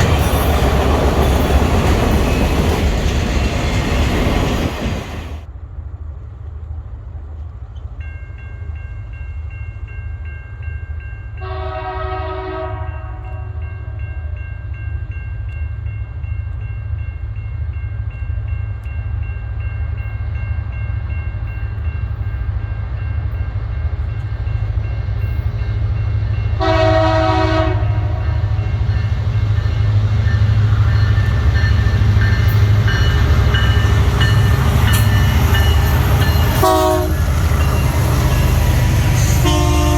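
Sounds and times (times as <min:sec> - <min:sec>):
diesel locomotive engine rumble: 0:00.0 - 0:39.9
locomotive horn blasts: 0:11.4 - 0:14.0, 0:26.6 - 0:28.8, 0:36.4 - 0:37.5, 0:39.2 - 0:39.9.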